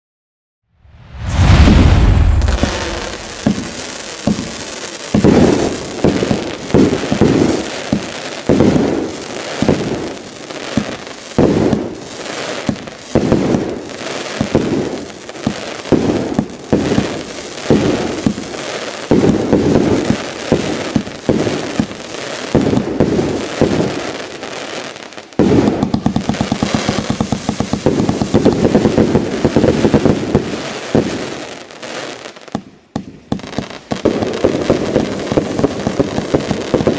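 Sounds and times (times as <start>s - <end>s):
fireworks shots bursting with crackle: 0.9s - 36.9s
rapid-fire firework barrage: 0.9s - 36.9s.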